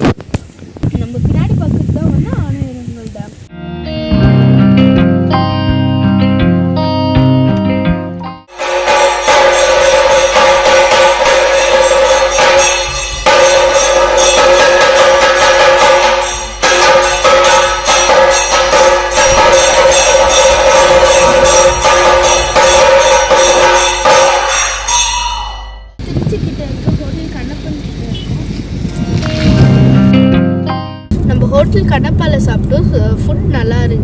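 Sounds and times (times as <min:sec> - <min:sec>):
background music with jingling beat: 0:04.1 - 0:25.3.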